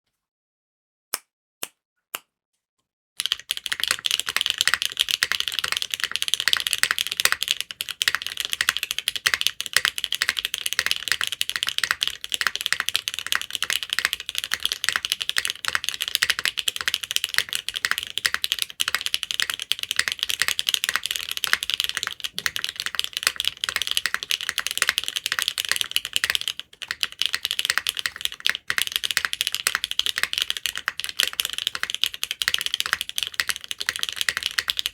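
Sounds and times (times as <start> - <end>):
mechanical keyboard typing: 3.2 - 34.9.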